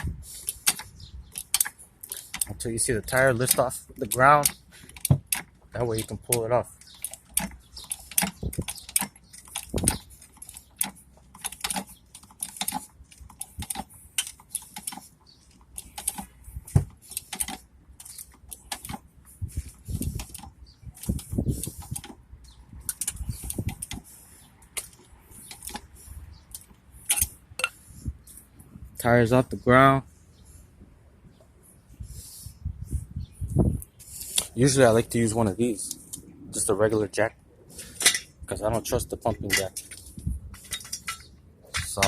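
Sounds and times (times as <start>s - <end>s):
car jack being pumped: 0.0s - 19.1s.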